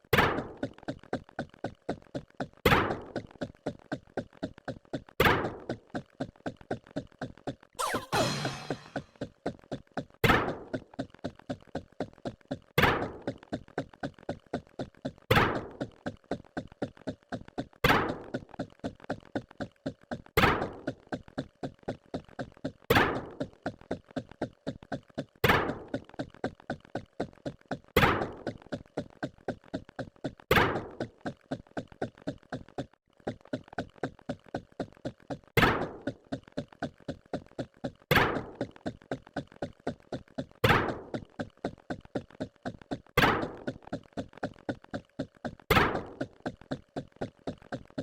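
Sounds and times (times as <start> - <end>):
louder hit: 7.8 - 9.0.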